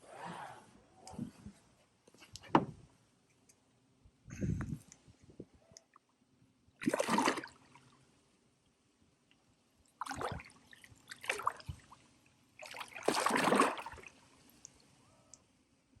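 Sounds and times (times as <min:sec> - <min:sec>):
fish splashing in water: 0:06.8 - 0:07.5, 0:12.6 - 0:14.0.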